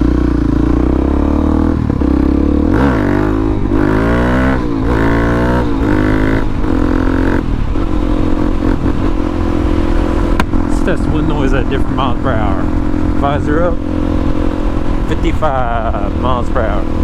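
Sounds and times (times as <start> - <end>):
motorcycle engine accelerating: 0.0 - 17.0
wind rushing over microphone: 0.0 - 17.0.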